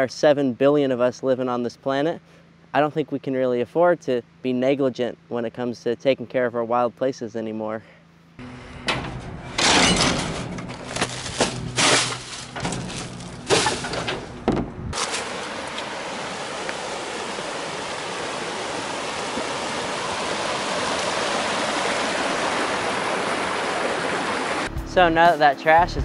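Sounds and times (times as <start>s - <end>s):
river water rushing: 15.0s - 24.7s.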